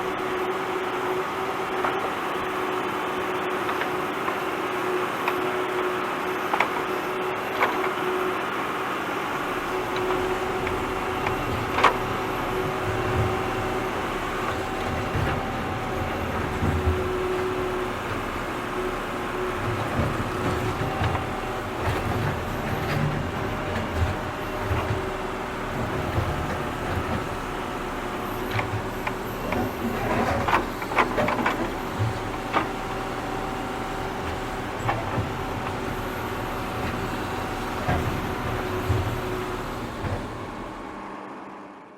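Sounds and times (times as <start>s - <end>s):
tractor engine running: 9.2s - 41.0s
metallic clanks and knocks: 9.7s - 27.5s.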